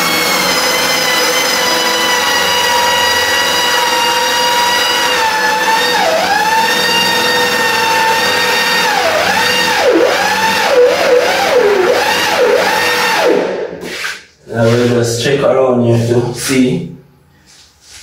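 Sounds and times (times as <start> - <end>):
electric drill hole saw into wood: 0.0 - 14.2.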